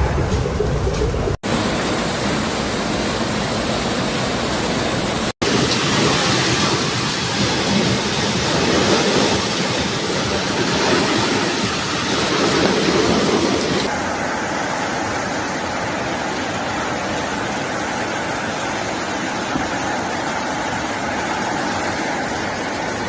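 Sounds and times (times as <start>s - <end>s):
water rushing: 0.0s - 23.0s.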